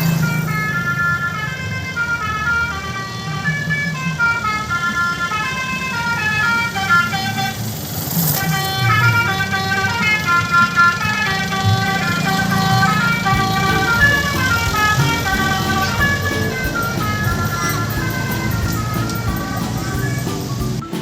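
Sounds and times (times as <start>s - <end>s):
engine running low: 8.4s - 21.0s
jingly tune: 12.7s - 21.0s.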